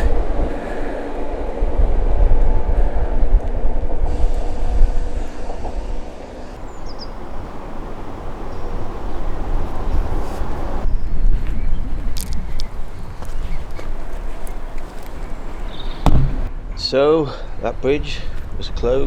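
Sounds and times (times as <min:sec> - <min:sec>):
train passing rumble: 0:00.0 - 0:10.9, 0:12.6 - 0:16.5.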